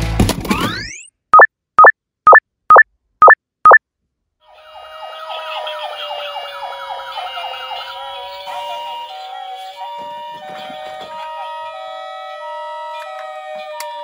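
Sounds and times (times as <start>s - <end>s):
short rising beep: 1.4s - 3.8s
toy emergency sirens: 4.4s - 14.0s.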